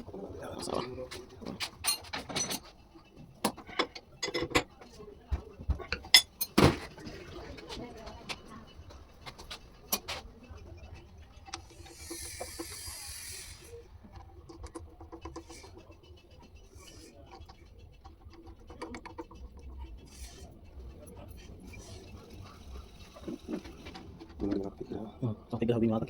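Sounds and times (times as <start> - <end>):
hiss: 11.9 - 13.7.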